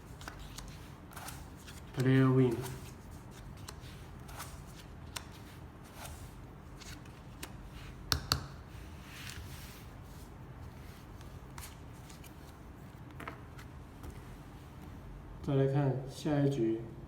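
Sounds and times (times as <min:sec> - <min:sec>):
playing cards sliding: 0:00.1 - 0:08.0, 0:08.8 - 0:12.6.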